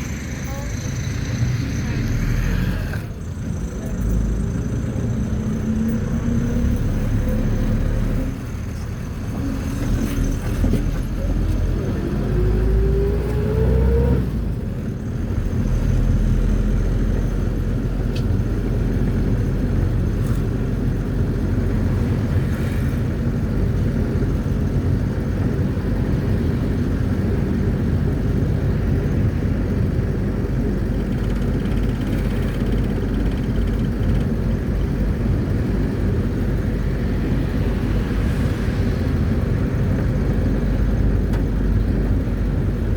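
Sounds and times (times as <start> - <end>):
low road rumble: 0.0 - 42.9
minibus engine accelerating: 0.0 - 42.9.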